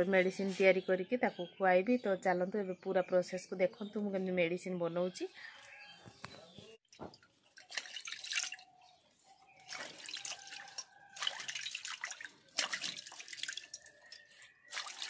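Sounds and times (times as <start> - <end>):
water splashing and pouring: 6.9 - 8.8, 9.6 - 15.0.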